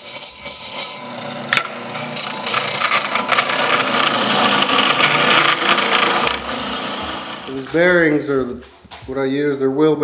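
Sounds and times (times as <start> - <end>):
grinding rasp on steel tube: 0.0 - 1.2, 2.2 - 7.5
power tool whining: 0.2 - 7.6.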